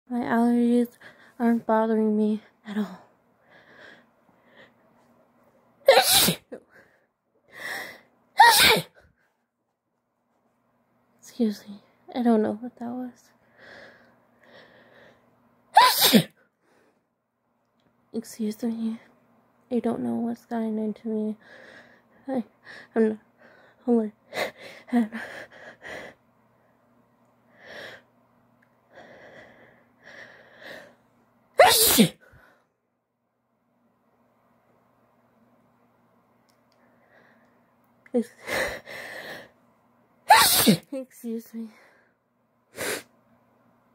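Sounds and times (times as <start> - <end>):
woman sneezing: 5.9 - 6.6, 8.4 - 9.0, 15.8 - 16.4, 31.6 - 32.3, 40.3 - 40.9.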